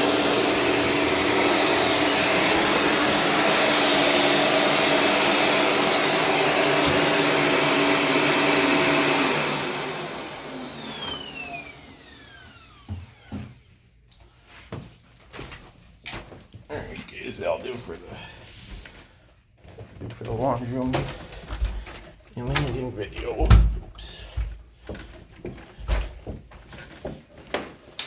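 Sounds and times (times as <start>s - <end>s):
vacuum cleaner motor whine: 0.0s - 13.7s.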